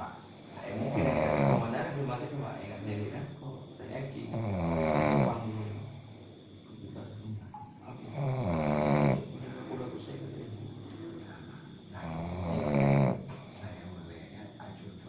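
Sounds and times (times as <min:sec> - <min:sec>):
man snoring: 0:00.0 - 0:02.0, 0:04.2 - 0:06.1, 0:07.9 - 0:09.4, 0:11.8 - 0:13.4
quiet breathing: 0:00.0 - 0:03.0, 0:03.8 - 0:15.0.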